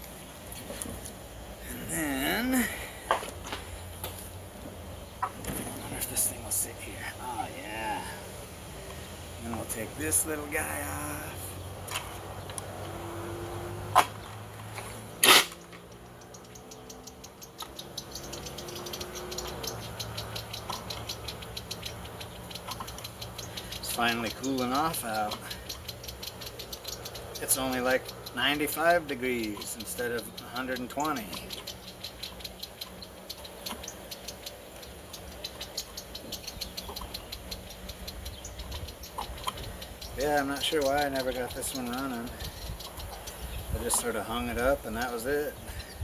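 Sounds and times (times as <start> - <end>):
faint rapid ticking: 15.8 - 46.0.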